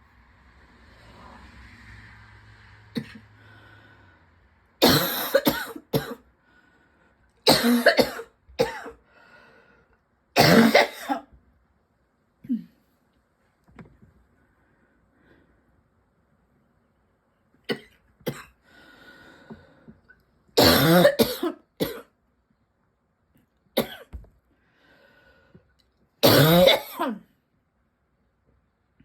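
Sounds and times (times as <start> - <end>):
person coughing: 3.0 - 3.2, 4.8 - 6.2, 7.5 - 9.0, 10.4 - 11.3, 17.7 - 18.6, 20.6 - 22.1, 23.8 - 24.2, 26.2 - 27.3.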